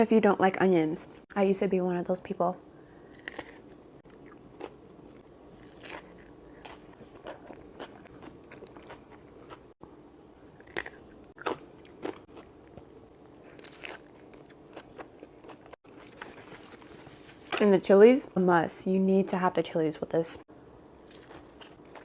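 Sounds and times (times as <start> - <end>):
crunchy bites: 3.1 - 4.8, 5.6 - 9.6, 10.6 - 12.5
chewing: 3.2 - 9.7, 10.6 - 16.8, 21.0 - 22.0.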